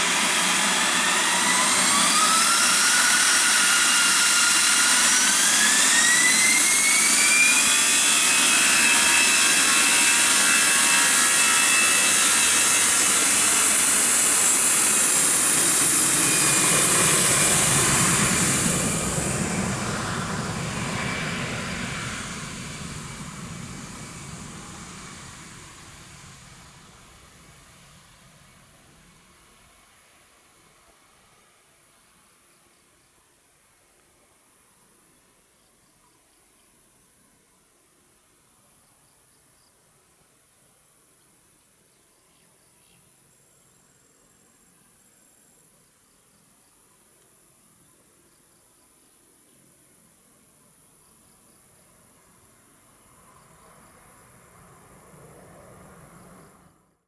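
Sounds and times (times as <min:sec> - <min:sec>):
jet engines whine at take-off: 0:00.0 - 0:30.0, 0:49.5 - 0:57.0.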